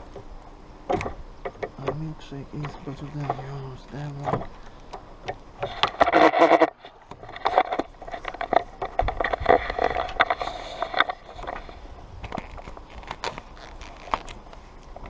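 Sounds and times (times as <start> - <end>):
fabric rustling and creaking: 5.6 - 15.0.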